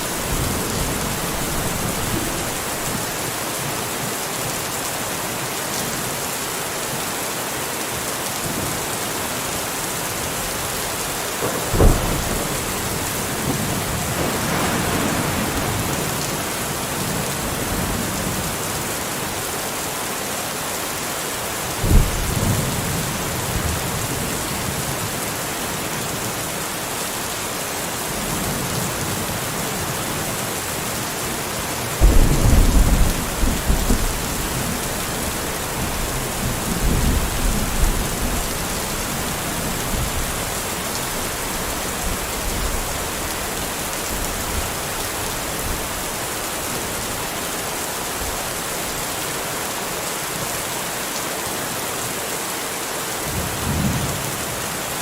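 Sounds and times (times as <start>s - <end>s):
thunder cracking and rolling: 0.0s - 3.2s, 10.5s - 18.5s, 32.0s - 40.6s
steady rain falling: 0.0s - 55.0s.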